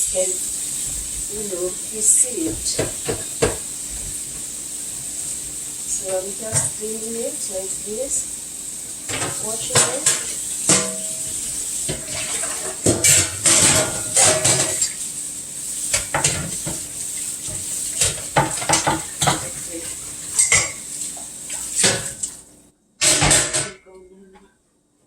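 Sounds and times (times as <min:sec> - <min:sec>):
steady hiss: 0:00.0 - 0:22.7
metal pans clattering: 0:02.5 - 0:03.7, 0:05.9 - 0:06.8, 0:09.1 - 0:15.0, 0:15.9 - 0:22.4, 0:23.0 - 0:24.1.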